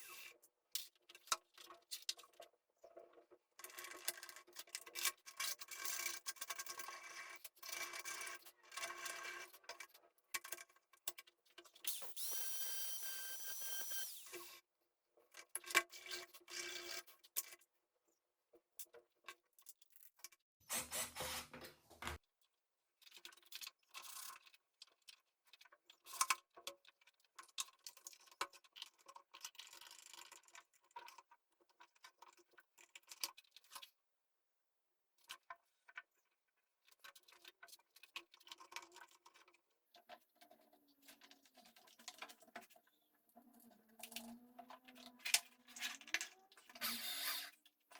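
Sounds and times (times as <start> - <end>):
rubbing and scraping on wood: 20.7 - 22.2.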